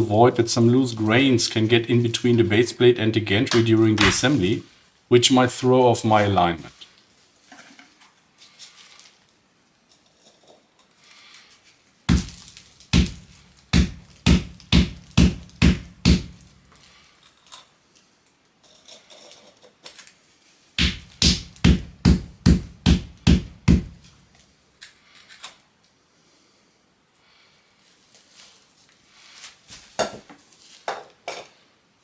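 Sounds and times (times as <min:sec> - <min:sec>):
heavy tamping thuds: 0:03.5 - 0:04.4, 0:12.1 - 0:16.8, 0:20.8 - 0:24.2.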